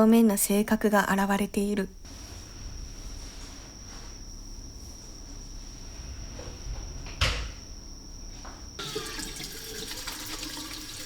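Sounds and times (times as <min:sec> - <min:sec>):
faint high whine: 0:00.0 - 0:11.0
water running: 0:08.8 - 0:11.0.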